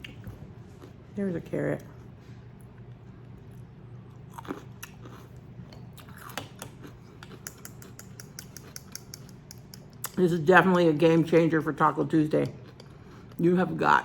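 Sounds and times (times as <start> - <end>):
person chewing crunchy food: 2.6 - 10.2.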